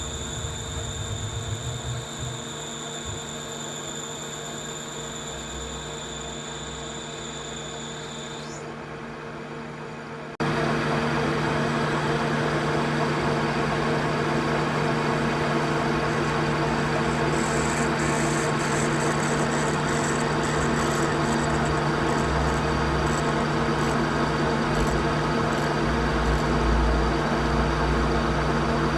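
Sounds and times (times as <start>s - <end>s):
machine tool motor hum: 0.0s - 8.7s, 14.7s - 28.1s.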